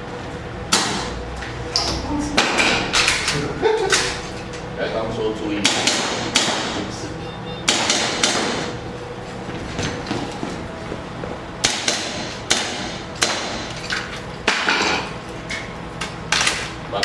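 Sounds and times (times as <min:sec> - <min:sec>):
airsoft pistol shots: 0:05.6 - 0:06.8, 0:07.7 - 0:08.8, 0:11.6 - 0:13.7.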